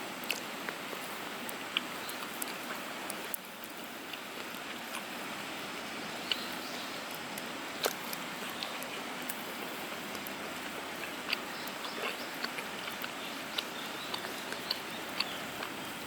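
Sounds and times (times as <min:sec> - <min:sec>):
wood fire hissing: 0:00.0 - 0:11.8.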